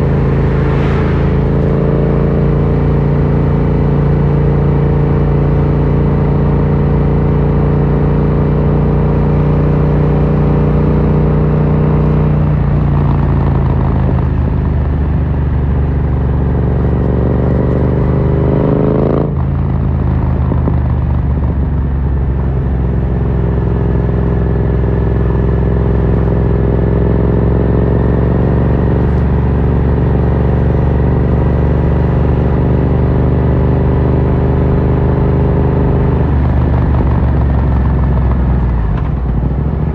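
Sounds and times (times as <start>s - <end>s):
motorcycle engine revving: 0.0s - 14.1s.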